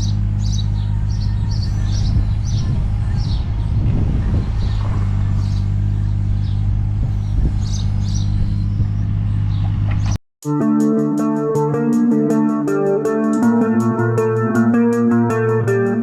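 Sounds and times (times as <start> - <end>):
birds chirping: 0.0 - 10.2
excavator engine running: 0.0 - 10.2.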